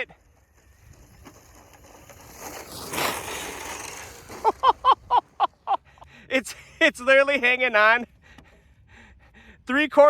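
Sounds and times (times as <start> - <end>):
rc car tires crunching on gravel: 0.0 - 5.6.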